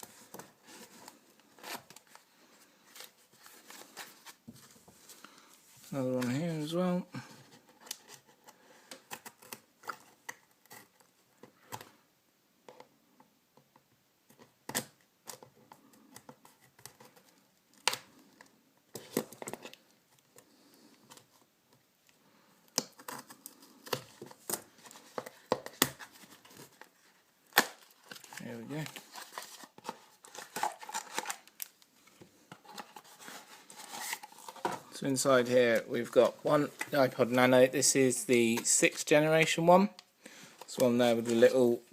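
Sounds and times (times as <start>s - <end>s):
packaging rustling: 22.9s - 37.2s.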